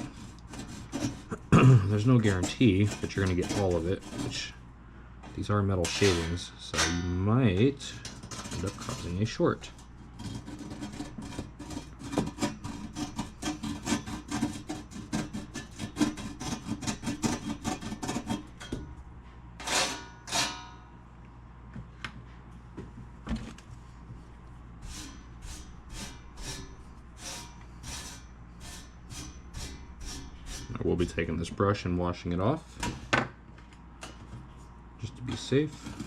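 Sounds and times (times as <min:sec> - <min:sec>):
razor blade scraping metal: 0:00.0 - 0:04.6, 0:05.8 - 0:07.0, 0:08.0 - 0:18.7, 0:19.6 - 0:20.8, 0:24.8 - 0:31.2.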